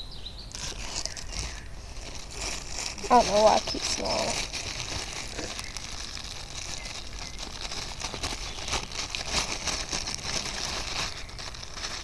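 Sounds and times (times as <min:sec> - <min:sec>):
plastic packaging crinkling: 0:00.5 - 0:12.0.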